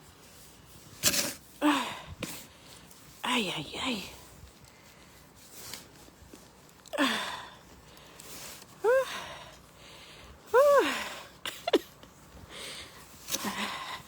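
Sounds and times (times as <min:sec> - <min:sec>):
woman breathing heavily: 0:06.9 - 0:11.4, 0:12.4 - 0:14.0
woman grunting: 0:08.8 - 0:09.3, 0:10.6 - 0:11.2.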